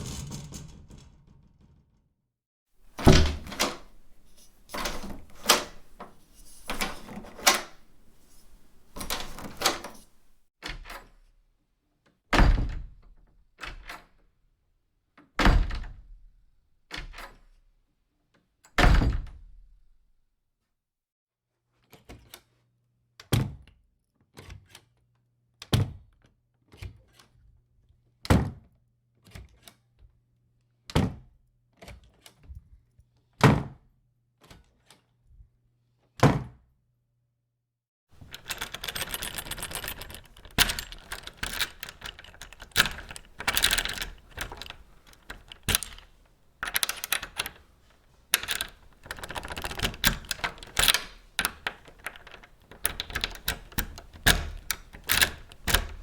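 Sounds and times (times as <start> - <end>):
key rattling in a lock: 2.8 - 10.4, 38.2 - 56.0
wooden door banging shut: 2.9 - 10.4, 38.2 - 47.6.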